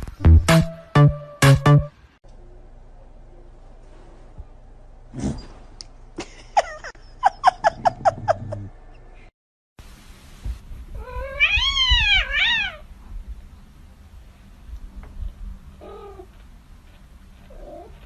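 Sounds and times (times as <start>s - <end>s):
cat mewing: 11.0s - 12.9s.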